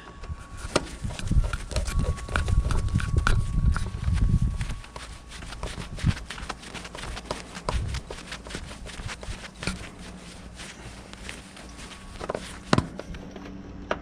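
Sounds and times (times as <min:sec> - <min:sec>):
low rumble: 0:00.1 - 0:04.9.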